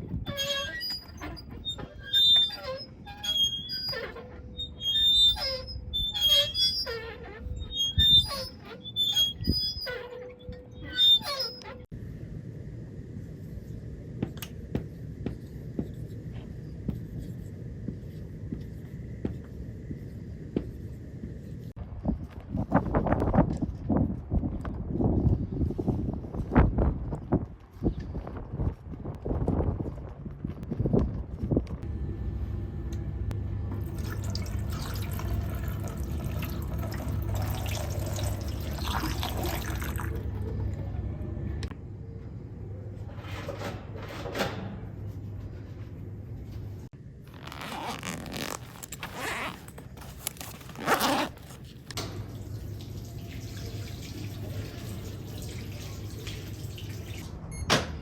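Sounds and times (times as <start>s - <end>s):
steady low hum: 11.9s - 22.0s, 23.3s - 47.4s
tap water running into sink: 33.8s - 40.3s, 52.1s - 57.2s.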